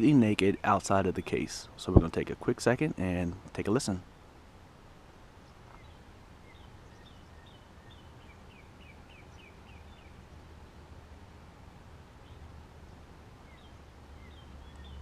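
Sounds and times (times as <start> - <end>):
low rumble and hiss: 0.0 - 15.0
bird chirping: 5.4 - 10.5, 12.2 - 15.0.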